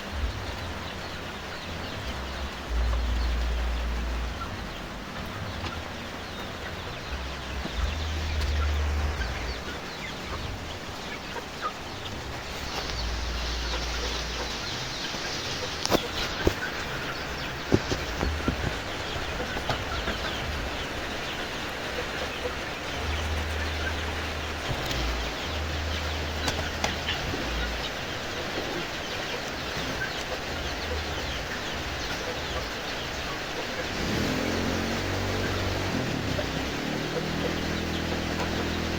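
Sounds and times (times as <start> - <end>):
low rumble: 0.0 - 11.4, 12.0 - 21.5, 22.3 - 28.4
background hiss: 0.0 - 38.9
chickens clucking: 0.0 - 38.9.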